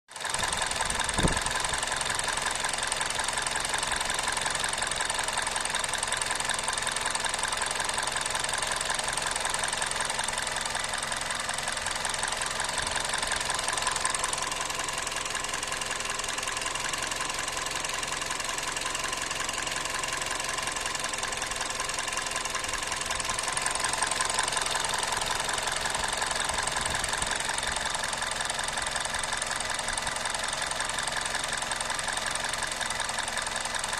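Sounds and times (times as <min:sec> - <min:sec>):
car engine idling: 0:00.1 - 0:33.9.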